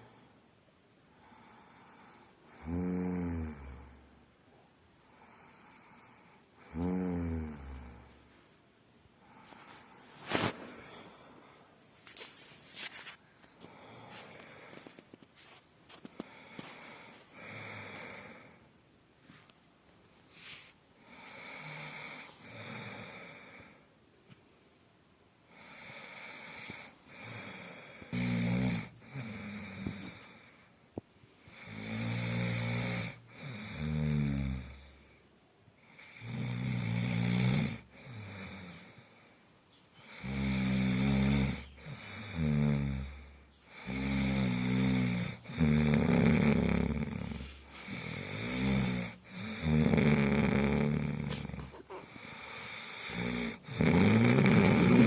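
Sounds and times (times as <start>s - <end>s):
soft breathing: 1.1s - 2.7s, 3.8s - 23.9s, 28.8s - 31.8s, 46.3s - 49.9s, 50.7s - 53.8s
person snoring: 1.2s - 4.1s, 5.2s - 8.2s, 16.0s - 18.6s, 20.6s - 23.8s, 25.5s - 30.6s, 31.5s - 35.1s, 35.8s - 39.2s, 40.0s - 55.0s.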